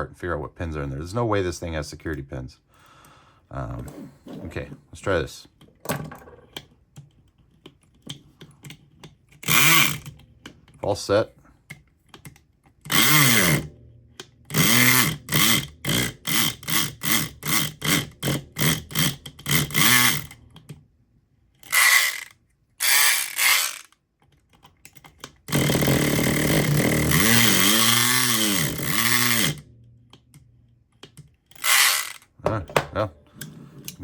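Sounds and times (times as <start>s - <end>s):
electric pick gun buzzing: 9.4s - 10.1s, 12.9s - 13.8s, 14.5s - 20.4s, 21.6s - 24.0s, 25.5s - 29.7s, 31.5s - 32.3s.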